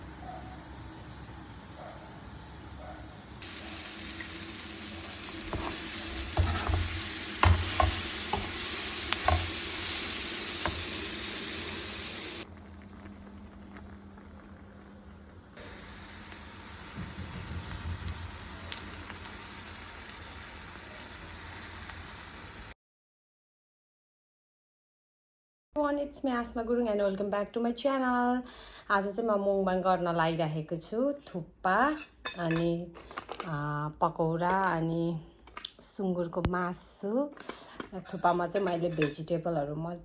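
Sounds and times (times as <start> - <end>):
food sizzling in a pan: 2.3 - 22.8, 38.1 - 39.3.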